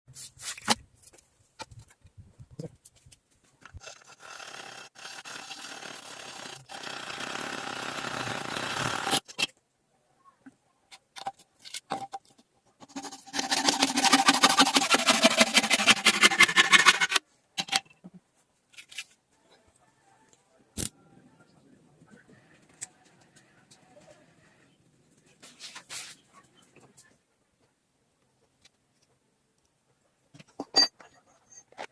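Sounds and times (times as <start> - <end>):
hand tool scraping: 12.8 - 17.8.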